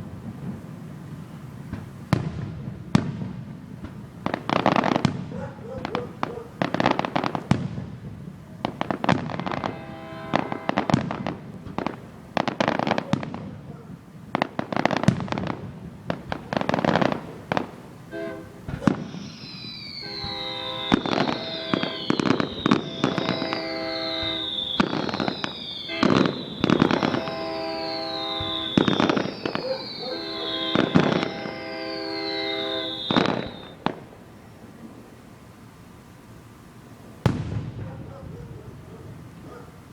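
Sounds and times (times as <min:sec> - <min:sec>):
fireworks booming and crackling: 0:00.0 - 0:35.2, 0:36.7 - 0:39.9
falling whistle-like tone: 0:19.2 - 0:33.8.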